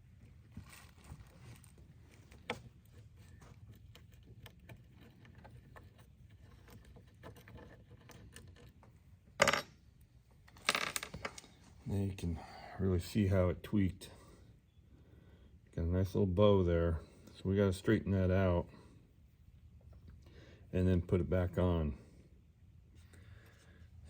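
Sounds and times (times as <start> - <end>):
tools and metal parts clicking: 10.5 - 11.6.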